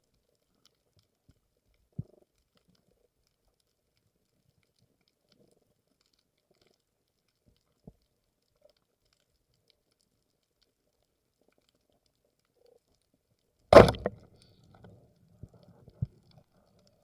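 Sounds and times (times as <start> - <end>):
faint clicks and crackles: 0.0 - 17.0
soft low thump: 13.8 - 14.2.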